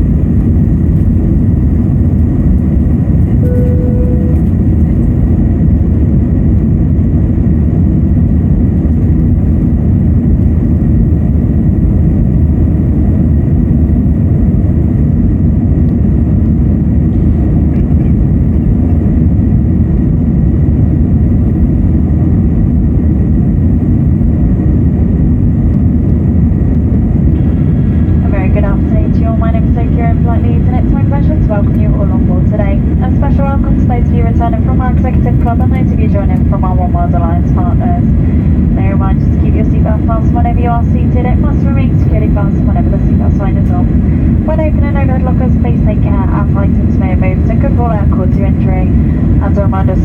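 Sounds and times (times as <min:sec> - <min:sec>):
jet engine cabin rumble: 0:00.0 - 0:50.0
short steady tone: 0:03.4 - 0:04.8.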